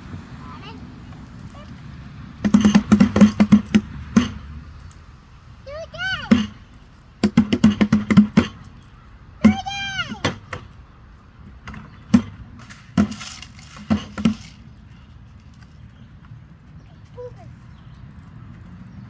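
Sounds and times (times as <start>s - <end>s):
sharp bangs: 0.0s - 14.7s.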